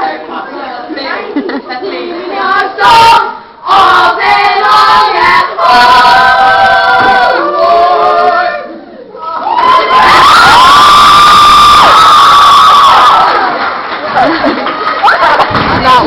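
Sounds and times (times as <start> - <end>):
girls singing together: 0.0 - 8.9.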